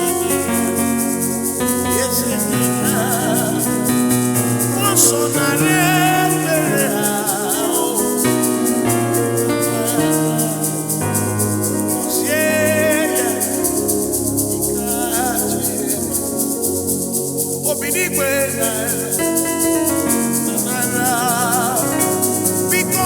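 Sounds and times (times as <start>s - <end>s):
fast shaker rhythm: 0.0s - 23.0s
gospel worship music: 0.0s - 23.0s.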